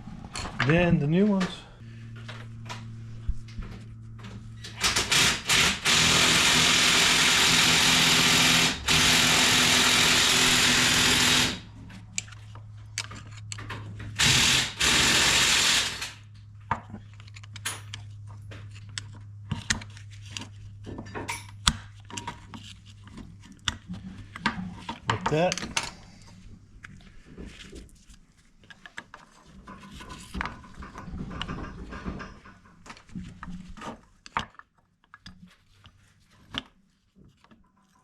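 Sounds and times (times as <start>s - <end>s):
steady low hum: 0.0s - 24.8s
power tool running: 4.7s - 11.7s, 14.2s - 16.2s.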